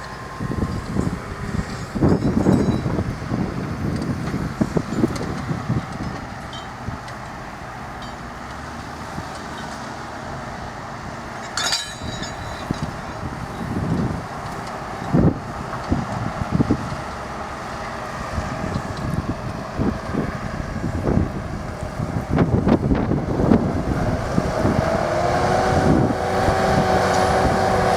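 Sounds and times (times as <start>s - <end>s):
tractor engines running: 0.0s - 27.9s
wind buffeting microphone: 0.0s - 27.9s
sharp clink: 11.5s - 13.0s.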